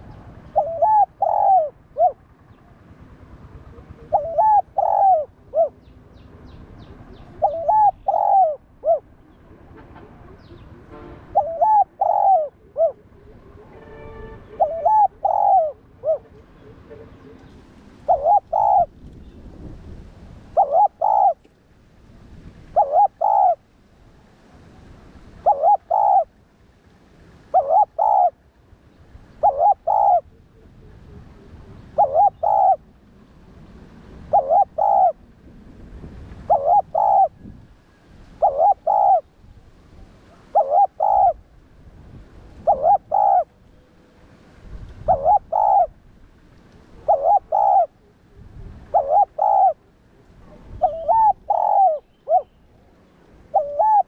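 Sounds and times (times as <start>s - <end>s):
dove cooing: 0.0s - 2.8s, 3.4s - 6.1s, 6.8s - 9.2s, 11.4s - 13.8s, 14.5s - 19.0s, 20.5s - 21.5s, 22.7s - 23.6s, 25.4s - 26.3s, 27.5s - 28.4s, 29.4s - 33.0s, 34.2s - 35.3s, 36.4s - 39.3s, 40.3s - 41.4s, 42.6s - 43.6s, 45.0s - 46.0s, 46.9s - 52.6s, 53.5s - 54.0s.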